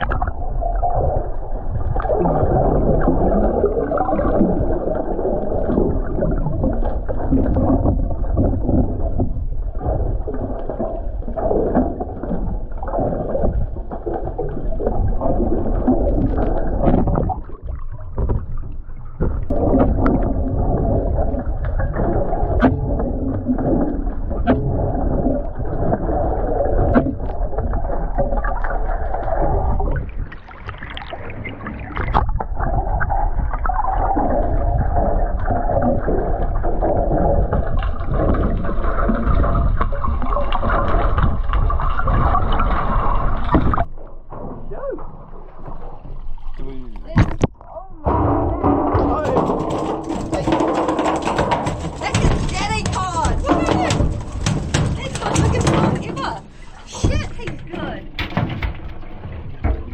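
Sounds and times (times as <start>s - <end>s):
muffled water churning and sloshing: 0.0s - 59.9s.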